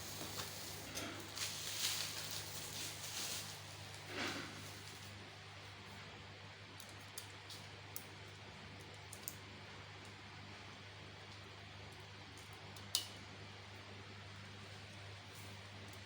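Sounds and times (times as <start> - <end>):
steady low hum: 0.0 - 6.9.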